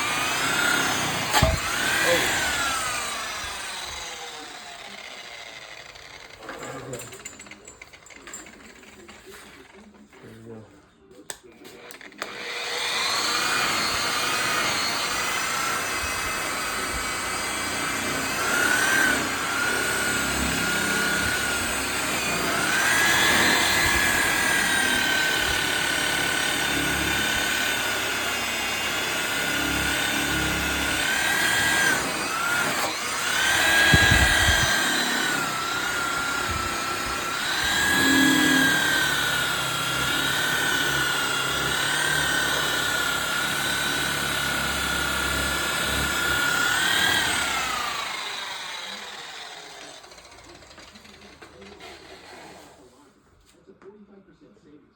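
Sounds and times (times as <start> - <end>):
electric polisher motor whine: 0.0 - 6.6, 12.1 - 52.2.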